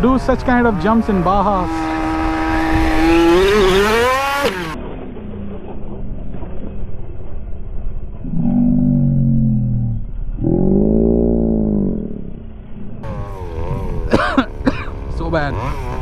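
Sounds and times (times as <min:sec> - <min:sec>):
small two-stroke engine revving: 0:00.0 - 0:04.8, 0:12.9 - 0:16.0
low rumble: 0:04.7 - 0:15.3.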